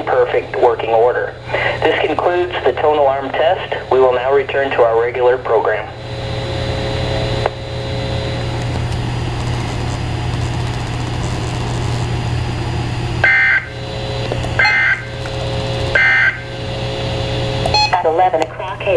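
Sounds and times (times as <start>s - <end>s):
radio receiver hiss: 0.0s - 6.0s, 8.5s - 12.2s
low hum: 0.0s - 18.9s.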